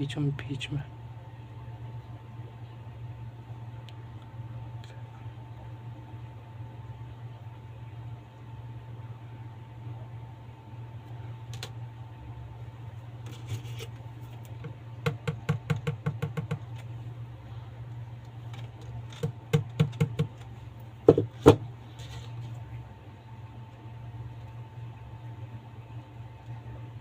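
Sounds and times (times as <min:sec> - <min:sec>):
steady low hum: 0:00.0 - 0:27.0
loud knocks: 0:21.1 - 0:21.7.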